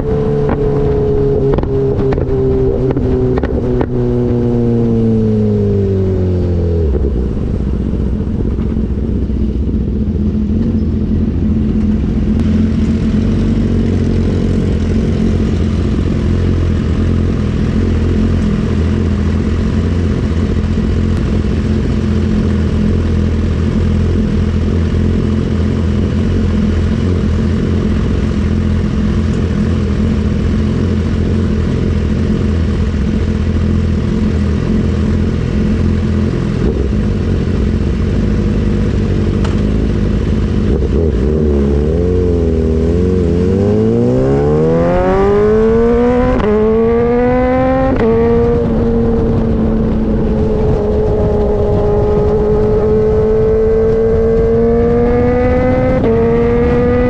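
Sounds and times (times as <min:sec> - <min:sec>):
motorcycle engine idling: 0:07.1 - 0:40.8.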